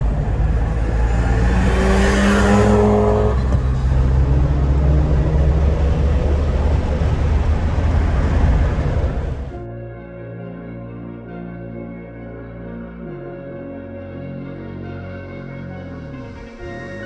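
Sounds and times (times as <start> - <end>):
car engine accelerating hard: 0.0 - 9.6
road noise: 0.0 - 9.7.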